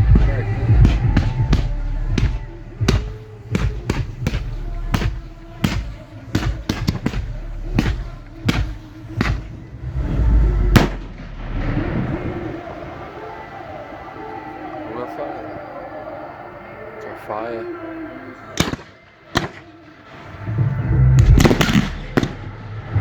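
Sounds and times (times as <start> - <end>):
low rumble: 0.0 - 14.5, 20.4 - 23.0
fireworks bursting: 0.0 - 16.4, 17.9 - 23.0.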